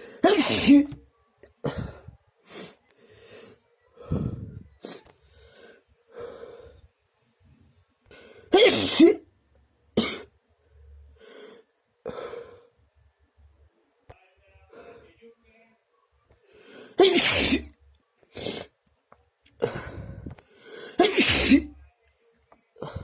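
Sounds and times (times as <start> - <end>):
person sneezing: 0.0 - 1.0, 8.5 - 9.2, 16.9 - 17.7, 19.6 - 21.7
cough-like burst: 0.2 - 1.0, 17.0 - 17.7, 21.0 - 21.7
breaths and sniffs: 1.7 - 6.9, 19.6 - 21.0.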